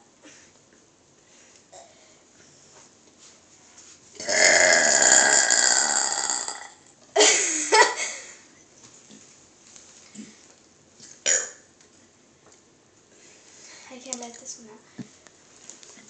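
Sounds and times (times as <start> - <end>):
loud burp: 4.2 - 6.9
short burp with dropping pitch: 4.2 - 6.9, 11.3 - 11.6.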